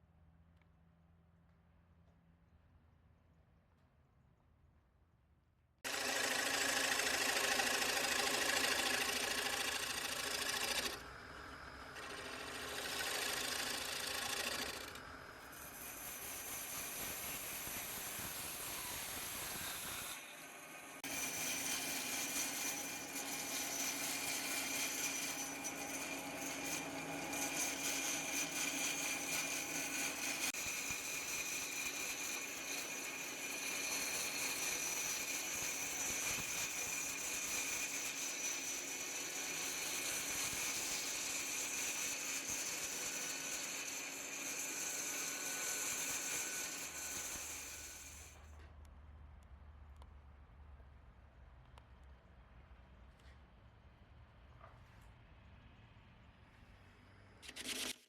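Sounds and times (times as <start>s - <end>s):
power tool high whine: 5.9s - 48.4s.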